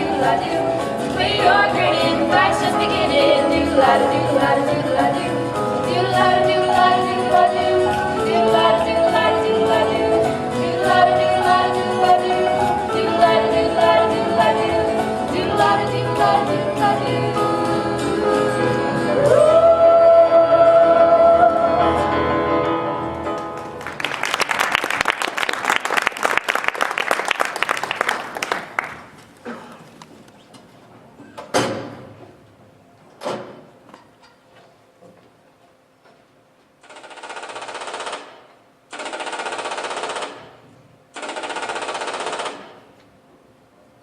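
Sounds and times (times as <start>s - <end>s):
singers performing with accompaniment: 0.0s - 23.6s
audience applause: 23.4s - 30.0s.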